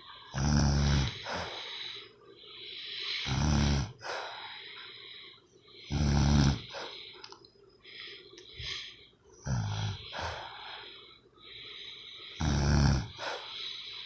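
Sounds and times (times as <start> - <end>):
soft hissing breaths: 0.0 - 14.0
person snoring: 0.3 - 2.0, 3.0 - 4.1, 5.8 - 7.0, 8.6 - 10.8, 12.3 - 13.5.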